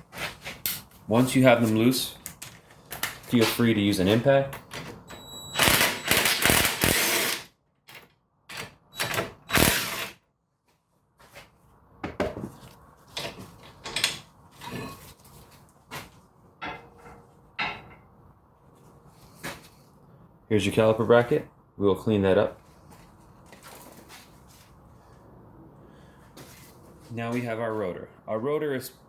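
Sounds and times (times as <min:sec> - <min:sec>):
impact wrench bursts: 0:05.2 - 0:07.5, 0:08.5 - 0:10.2.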